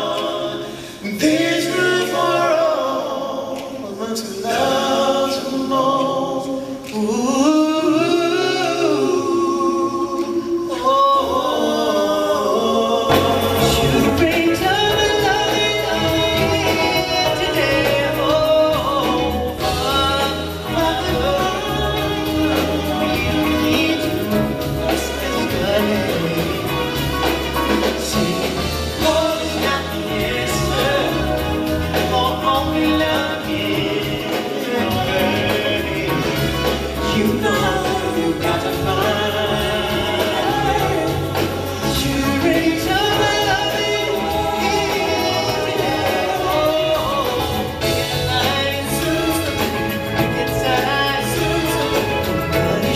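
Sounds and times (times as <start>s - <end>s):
backing band: 0.0s - 52.9s
vocal group singing in harmony: 0.0s - 52.9s
steady bass line: 13.1s - 52.9s.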